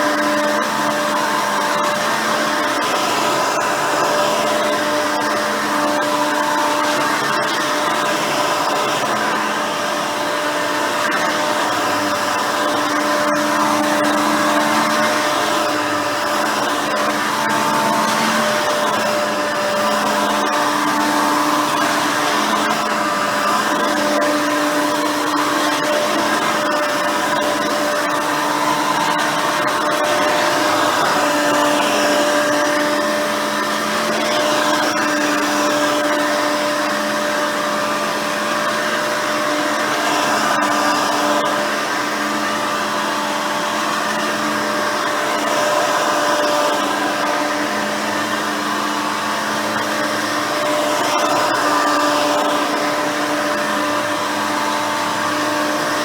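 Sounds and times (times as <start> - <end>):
vacuum cleaner running: 0.0 - 56.0.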